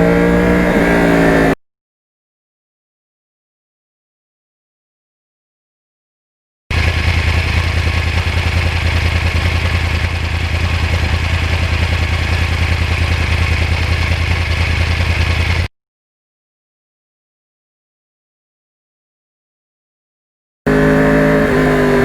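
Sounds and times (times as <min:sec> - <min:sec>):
motorcycle engine idling: 0:06.7 - 0:15.7.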